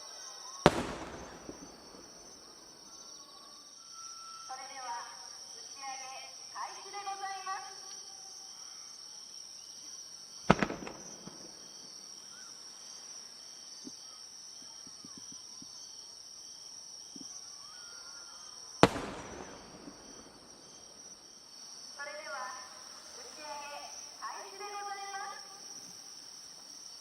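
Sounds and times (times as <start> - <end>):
insects trilling: 0.0 - 27.0
firework shells bursting: 0.6 - 2.8, 10.4 - 11.9, 18.8 - 21.2.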